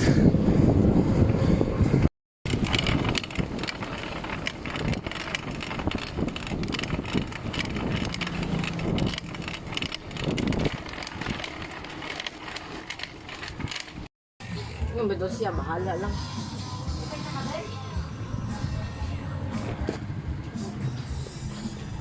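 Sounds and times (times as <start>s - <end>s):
wind noise on microphone: 0.0s - 14.1s
bicycle clicks and rattles: 2.5s - 14.1s.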